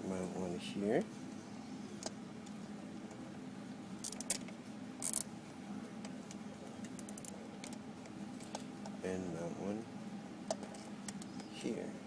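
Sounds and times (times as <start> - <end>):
low steady hum: 0.0 - 12.0
zip tie ratcheting clicks: 4.0 - 4.4, 5.0 - 5.2, 7.0 - 7.8.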